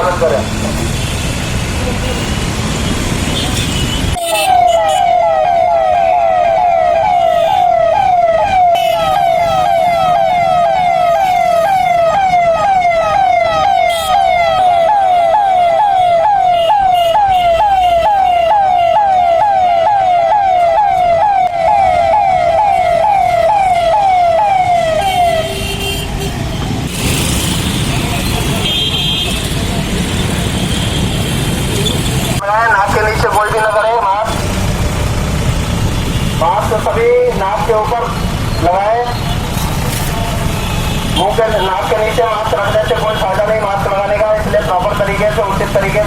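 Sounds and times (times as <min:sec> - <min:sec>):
siren wailing: 0:04.3 - 0:25.5.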